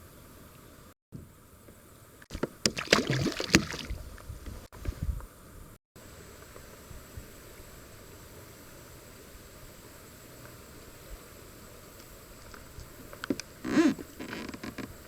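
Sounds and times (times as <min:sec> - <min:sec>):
faint background hiss: 0:03.4 - 0:15.0.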